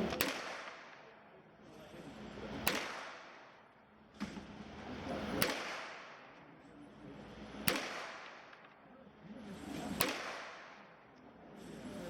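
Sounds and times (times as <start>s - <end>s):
sharp gunshots: 0.0s - 1.2s, 2.5s - 4.6s, 5.2s - 6.4s, 7.5s - 8.8s, 9.6s - 11.1s.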